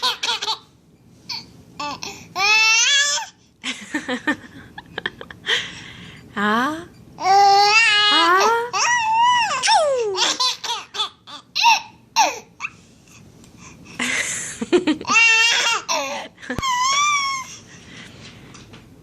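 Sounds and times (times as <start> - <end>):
baby laughing and squealing: 8.7 - 12.8, 15.0 - 17.6.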